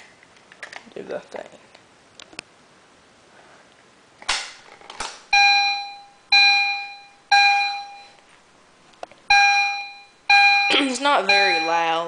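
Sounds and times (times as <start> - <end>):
fire alarm chime: 5.3 - 8.2, 9.3 - 12.0.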